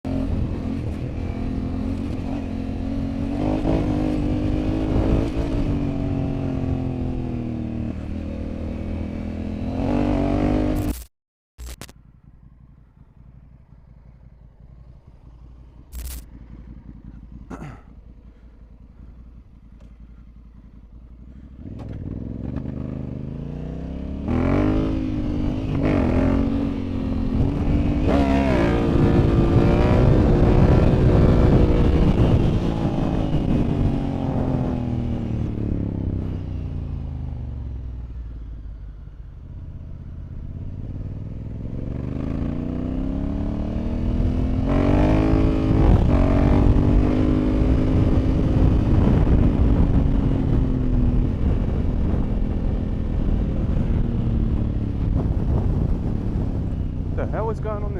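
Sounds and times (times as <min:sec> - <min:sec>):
motorcycle engine revving: 0:00.1 - 0:11.1, 0:12.0 - 0:57.9.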